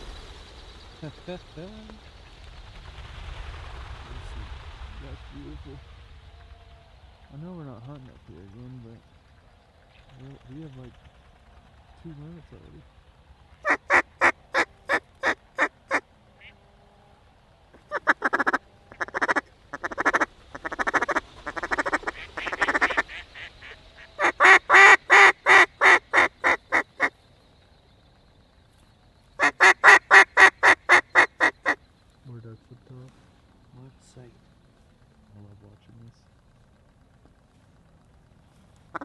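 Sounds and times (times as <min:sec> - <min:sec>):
duck call quacks: 0:13.6 - 0:16.5, 0:17.8 - 0:27.1, 0:29.4 - 0:31.8.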